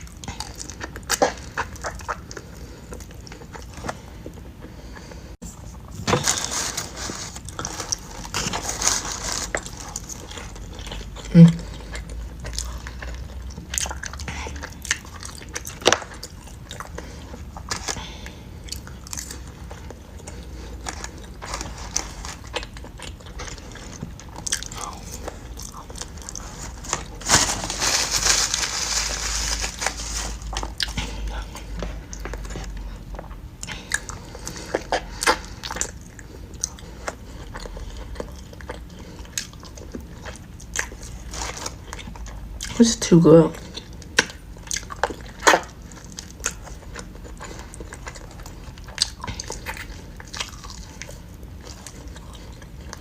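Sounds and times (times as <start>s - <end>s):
person chewing and sucking meat: 0.0s - 5.9s, 6.8s - 42.8s, 43.6s - 53.0s.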